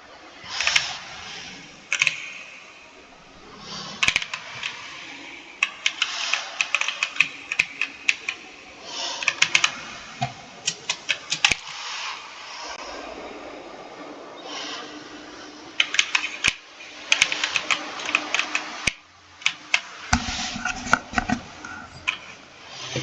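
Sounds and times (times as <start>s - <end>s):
keyboard key clicks: 1.9s - 2.6s, 4.0s - 8.4s, 9.2s - 11.8s, 15.8s - 22.4s.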